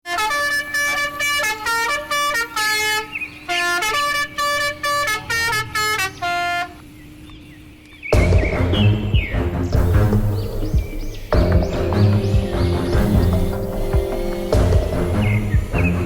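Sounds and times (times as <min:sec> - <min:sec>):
musical horn honking a tune: 0:00.0 - 0:06.8, 0:08.2 - 0:16.0
loud music: 0:08.2 - 0:16.0
steady low hum: 0:08.2 - 0:16.0.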